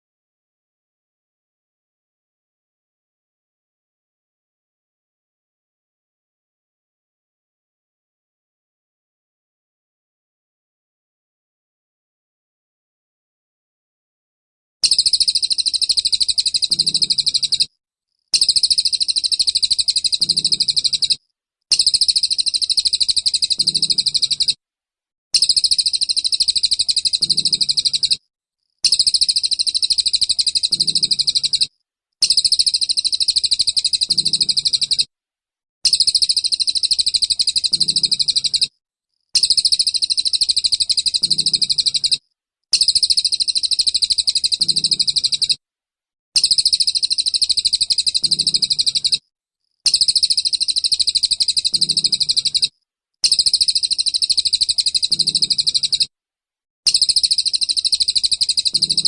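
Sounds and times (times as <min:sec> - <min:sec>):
songbird rattling song: 0:14.8 - 0:17.7, 0:18.3 - 0:24.6, 0:25.4 - 0:28.2, 0:28.8 - 0:35.1, 0:35.8 - 0:38.7, 0:39.4 - 0:45.6, 0:46.4 - 0:49.2, 0:49.8 - 0:56.1, 0:56.9 - 0:59.0.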